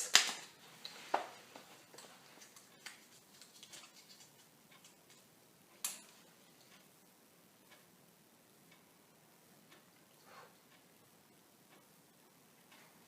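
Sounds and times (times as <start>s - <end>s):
wood fire crackling: 0.0s - 7.8s.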